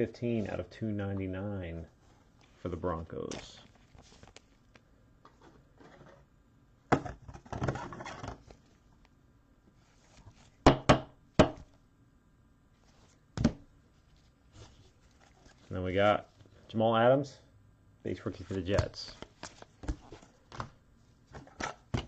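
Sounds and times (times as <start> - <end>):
cards rustling: 3.2 - 4.8, 14.5 - 15.7, 18.2 - 22.0.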